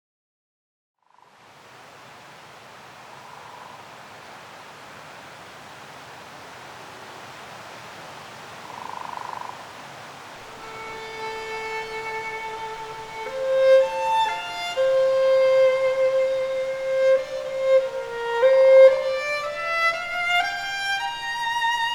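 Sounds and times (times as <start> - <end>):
steady hiss: 1.1 - 21.9
violin playing slow held notes: 10.4 - 21.9.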